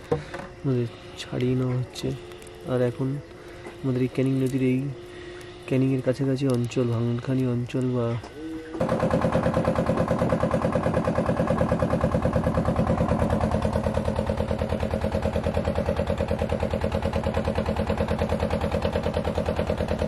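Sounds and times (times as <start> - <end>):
boat engine thumping: 0.0 - 0.6, 8.2 - 20.0.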